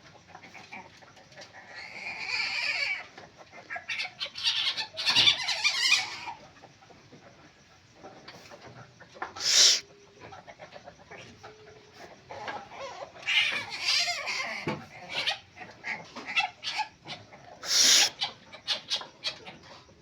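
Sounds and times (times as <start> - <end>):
civet calling harshly: 9.4 - 9.8, 17.6 - 18.3.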